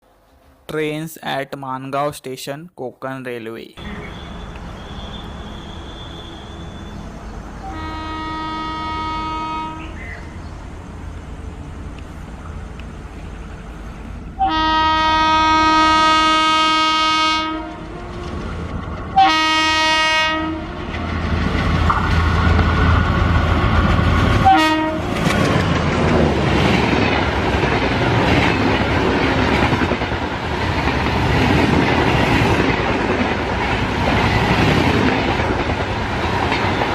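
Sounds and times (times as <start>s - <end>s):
locomotive horn blasts: 3.8s - 10.0s, 14.4s - 18.4s, 19.2s - 20.8s, 24.4s - 25.1s
train rumble: 3.8s - 36.9s.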